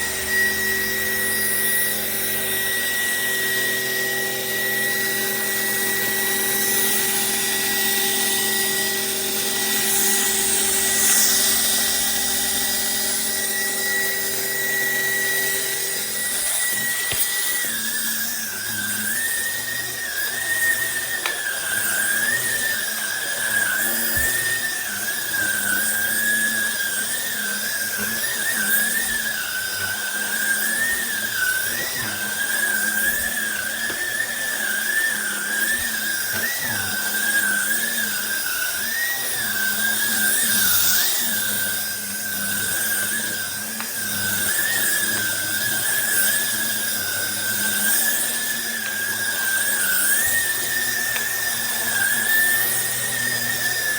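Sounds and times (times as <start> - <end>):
stick vacuum motor whine: 0.0 - 53.9.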